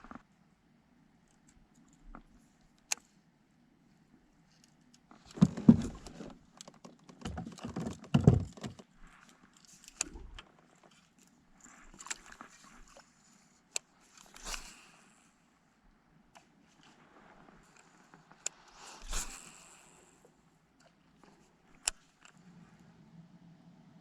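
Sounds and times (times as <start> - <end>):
knocks clatter and rattles: 5.3 - 8.9
faint low hum: 8.4 - 24.0.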